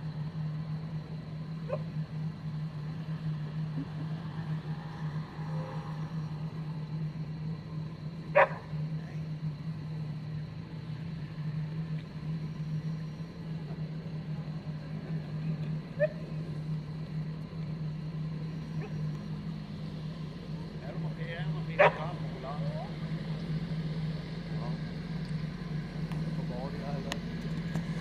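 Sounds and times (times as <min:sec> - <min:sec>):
steady low hum: 0:00.0 - 0:28.0
dog barking: 0:08.4 - 0:08.7, 0:21.8 - 0:22.0.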